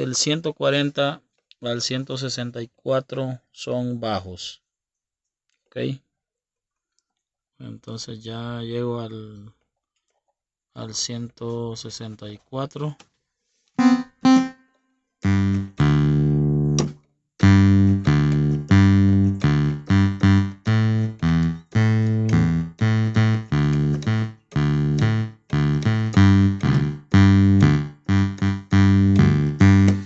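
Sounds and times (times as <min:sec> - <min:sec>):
short detached keyboard bass notes: 0:13.8 - 0:14.6, 0:15.2 - 0:30.0.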